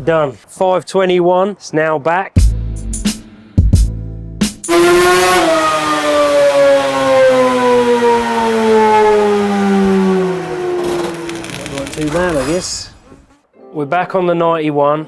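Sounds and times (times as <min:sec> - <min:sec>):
two-stroke engine revving down: 0:04.7 - 0:13.3.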